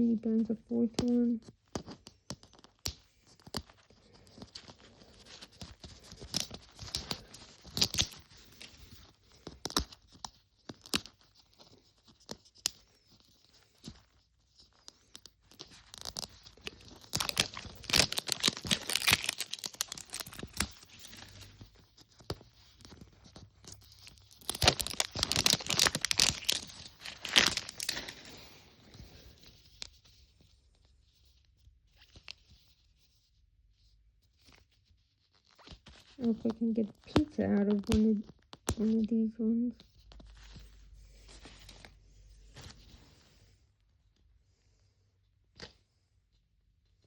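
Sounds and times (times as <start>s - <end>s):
small clicks and taps: 1.0s - 4.8s
plastic wrapping tearing and crinkling: 1.8s - 12.8s, 14.7s - 29.9s, 35.4s - 39.0s.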